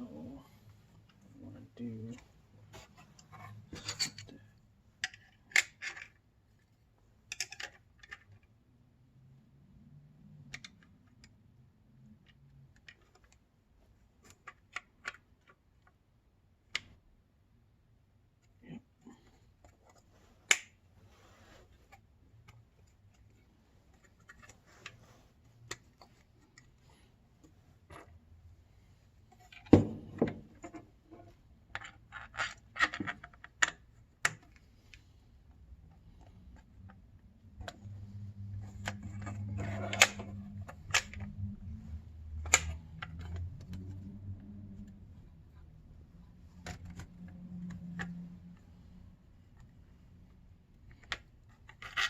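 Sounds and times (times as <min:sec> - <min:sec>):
clicks and taps of parts handled: 0:07.3 - 0:08.5, 0:10.4 - 0:11.4, 0:16.6 - 0:17.0, 0:19.6 - 0:20.8, 0:36.2 - 0:41.6, 0:42.3 - 0:45.0.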